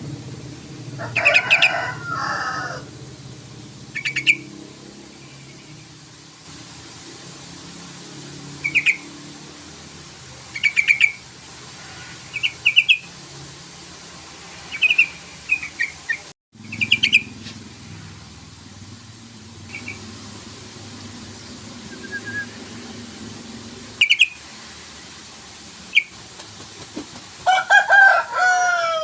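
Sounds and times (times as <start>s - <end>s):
bird bubbly chattering: 3.8s - 6.0s, 8.5s - 9.2s, 10.4s - 11.3s, 12.3s - 13.2s, 14.7s - 17.4s, 19.6s - 20.2s, 21.0s - 24.5s, 25.8s - 26.2s.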